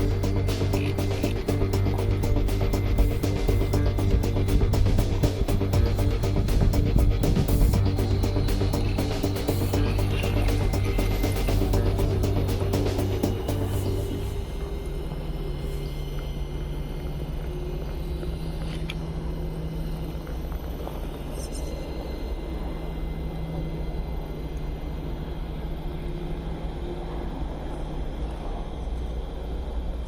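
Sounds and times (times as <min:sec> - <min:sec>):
rumbling noise: 0:00.0 - 0:16.1.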